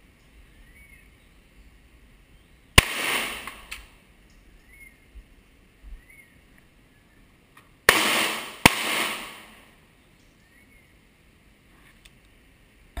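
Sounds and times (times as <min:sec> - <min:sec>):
pistol shots with echo: 0:02.8 - 0:03.7, 0:07.9 - 0:09.7.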